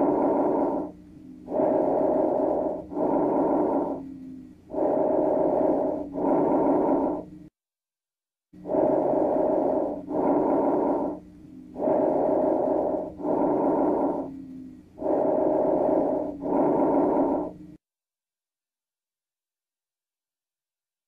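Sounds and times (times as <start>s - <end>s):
breathing through a stethoscope: 0.0s - 7.5s, 8.6s - 17.8s.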